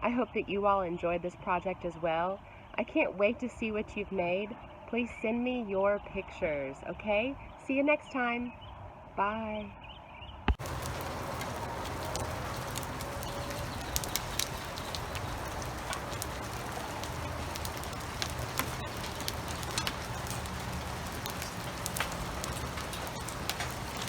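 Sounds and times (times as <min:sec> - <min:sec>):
drops ticking on a surface: 0:10.5 - 0:24.0
rain falling: 0:10.6 - 0:24.0.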